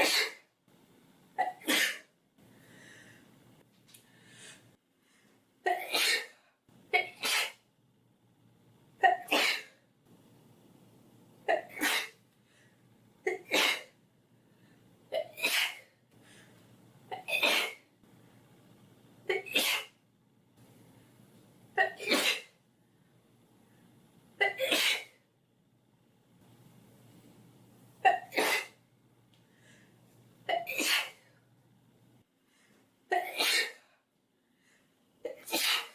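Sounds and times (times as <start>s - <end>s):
girl sneezing: 33.1s - 33.8s, 35.4s - 35.9s.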